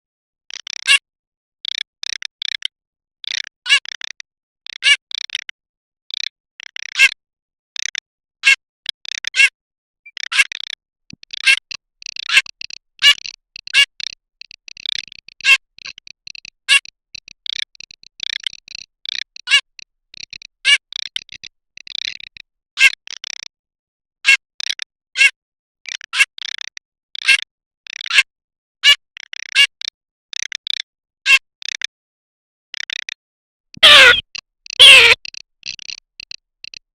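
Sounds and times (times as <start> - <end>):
duck rattling calls: 10.2 - 22.2, 33.8 - 36.4.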